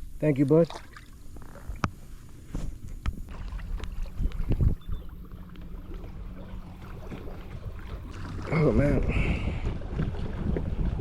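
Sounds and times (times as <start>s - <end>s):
low rumble of water: 0.0s - 11.0s
wind: 0.0s - 11.0s
water splash: 3.3s - 4.7s.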